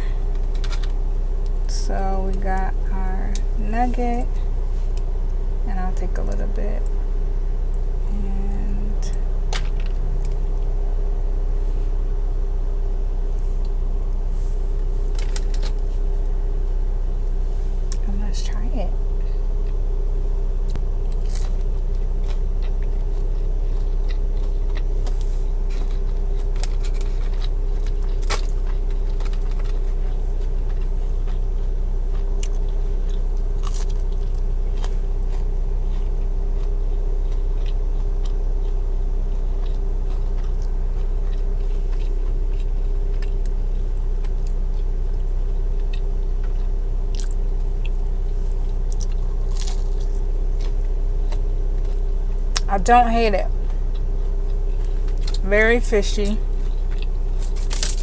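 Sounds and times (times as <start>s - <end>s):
steady low hum: 0.0s - 58.0s
person chewing crunchy food: 20.6s - 52.7s, 53.5s - 55.4s, 56.3s - 58.0s.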